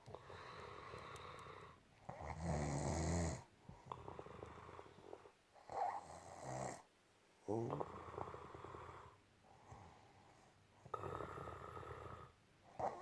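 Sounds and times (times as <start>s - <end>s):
woman snoring: 2.2s - 3.5s.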